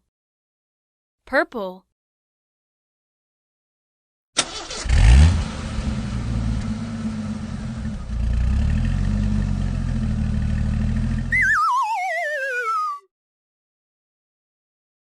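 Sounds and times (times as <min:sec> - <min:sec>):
vehicle engine revving and running: 0:04.7 - 0:11.3
wavering whistle sliding down: 0:11.3 - 0:13.1.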